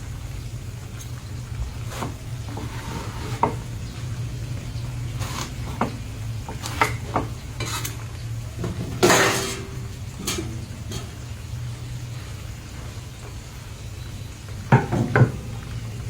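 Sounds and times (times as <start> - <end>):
meat frying in a pan: 0.0 - 16.0
utensil clinking against pan: 8.6 - 11.6.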